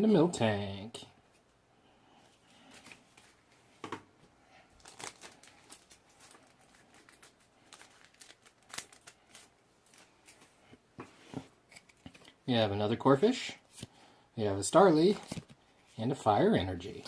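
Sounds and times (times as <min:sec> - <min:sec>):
trading cards rustling: 0:04.8 - 0:10.6, 0:14.8 - 0:16.0.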